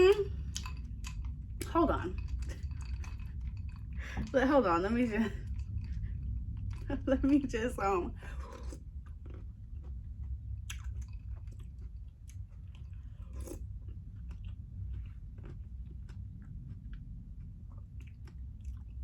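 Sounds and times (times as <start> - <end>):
chewing berries with ice: 0.0 - 4.4, 8.2 - 19.0.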